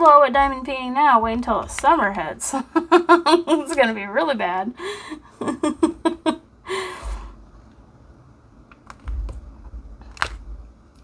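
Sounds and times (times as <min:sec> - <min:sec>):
person chuckling: 0:02.5 - 0:03.8, 0:04.8 - 0:07.2.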